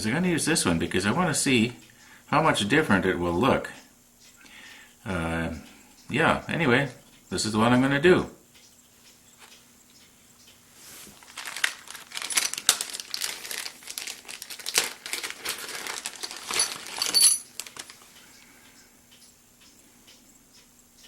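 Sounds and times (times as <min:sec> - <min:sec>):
crinkling and rustling: 0:10.8 - 0:18.2.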